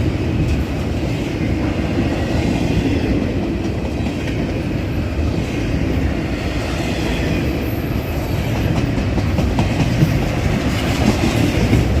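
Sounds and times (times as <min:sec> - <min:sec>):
freight train rumbling past: 0:00.0 - 0:12.0.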